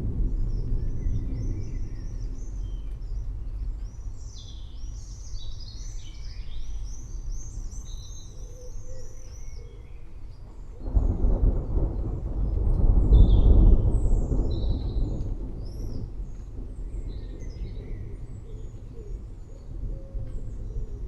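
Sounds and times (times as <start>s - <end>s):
thunder rumbling: 0.0s - 4.2s, 10.6s - 21.0s.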